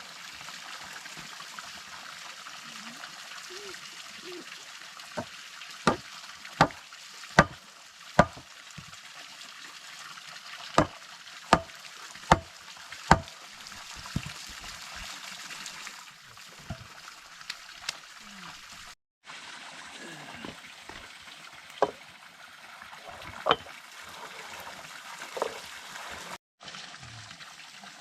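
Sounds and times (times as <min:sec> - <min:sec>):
trickle of running water: 0:00.0 - 0:28.0
sharp knocks: 0:08.2 - 0:08.4.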